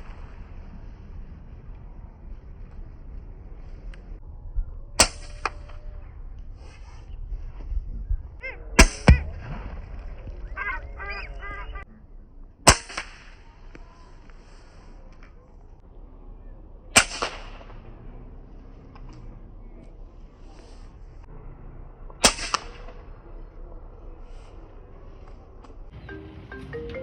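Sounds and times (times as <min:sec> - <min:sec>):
air rifle shots: 0:05.0 - 0:05.8, 0:08.8 - 0:10.0, 0:12.6 - 0:14.8, 0:16.9 - 0:18.4, 0:22.2 - 0:23.2
harsh bird calls: 0:08.3 - 0:11.9.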